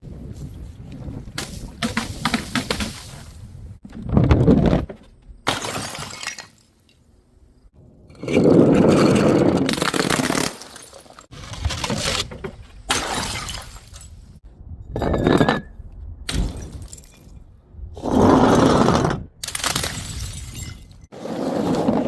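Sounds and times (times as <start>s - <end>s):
glass bottles smashing: 5.5s - 6.6s, 9.7s - 11.3s, 12.9s - 14.2s, 19.7s - 21.1s.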